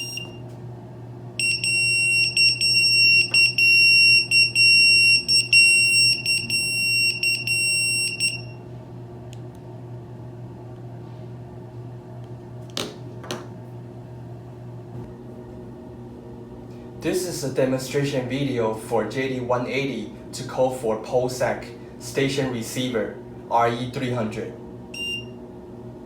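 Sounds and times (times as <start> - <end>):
pager electronic beeping: 0.0 - 0.4, 1.4 - 8.6, 25.0 - 25.3.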